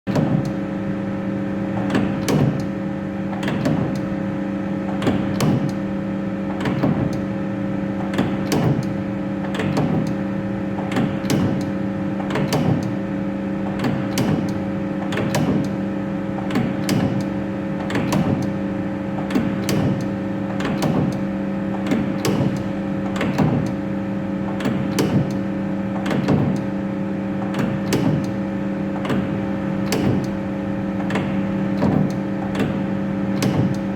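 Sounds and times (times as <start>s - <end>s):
lathe turret clunking: 31.0s - 33.9s.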